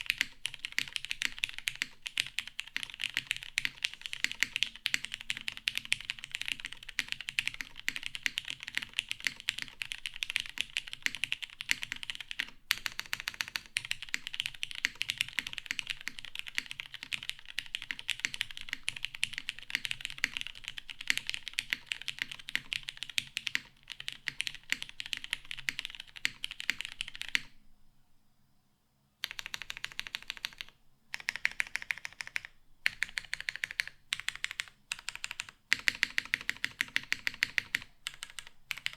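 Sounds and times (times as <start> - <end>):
fast typing on mechanical keyboard: 0.0 - 27.5, 29.2 - 38.9.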